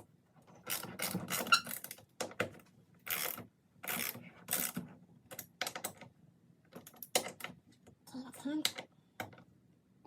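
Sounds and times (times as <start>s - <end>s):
torque wrench ratcheting: 3.1s - 4.8s.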